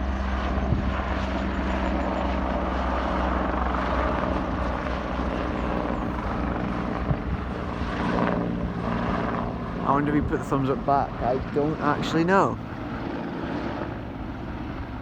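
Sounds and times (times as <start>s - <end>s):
helicopter rotor and turbine drone: 0.0s - 15.0s.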